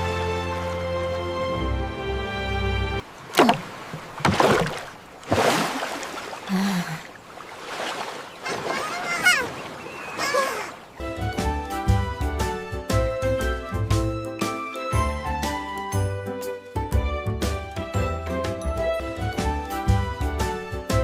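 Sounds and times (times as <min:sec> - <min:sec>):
water splashing and sloshing: 0:00.0 - 0:12.7.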